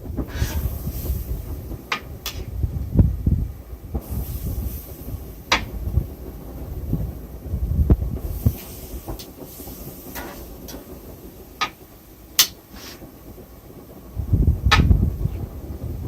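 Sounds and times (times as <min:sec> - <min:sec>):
low rumble: 0:00.0 - 0:16.0
metal tongs clicking on grill grates: 0:12.4 - 0:13.0.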